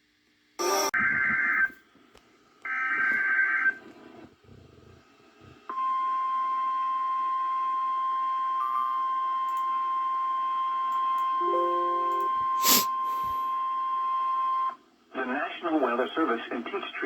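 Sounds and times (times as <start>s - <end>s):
steady alert attention tone: 11.4s - 12.9s.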